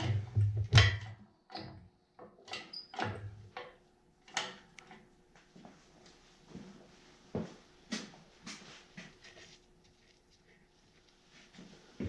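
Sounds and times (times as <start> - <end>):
metal knocks and clunks: 0.0 - 1.8.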